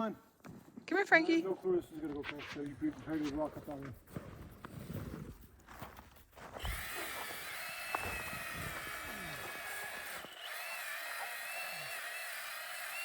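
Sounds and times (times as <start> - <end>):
chainsaw motor whine: 6.6 - 13.0.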